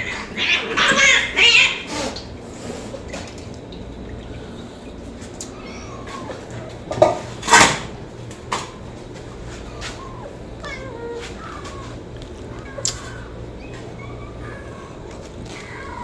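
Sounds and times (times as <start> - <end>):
kittens meowing: 0.0 - 2.3, 4.8 - 7.0, 8.5 - 16.0.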